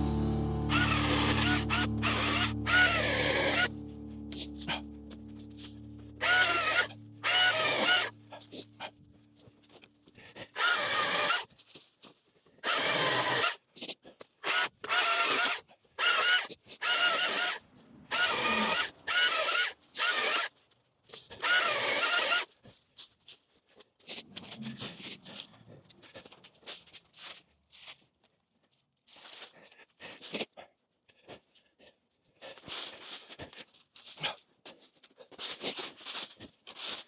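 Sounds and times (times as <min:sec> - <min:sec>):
electric motor revving in bursts: 0:00.7 - 0:03.7, 0:06.2 - 0:08.1, 0:10.6 - 0:11.4, 0:12.6 - 0:13.6, 0:14.4 - 0:20.5, 0:21.4 - 0:22.4.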